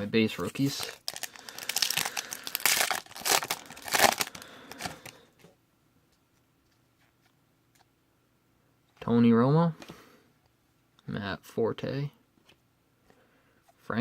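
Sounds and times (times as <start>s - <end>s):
wrapper being torn and crinkled: 0.4s - 5.2s.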